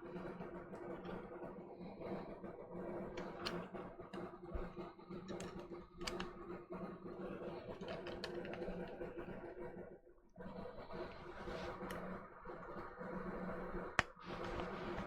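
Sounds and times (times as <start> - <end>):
small tools clicking and tapping: 3.2 - 6.4, 7.6 - 9.0.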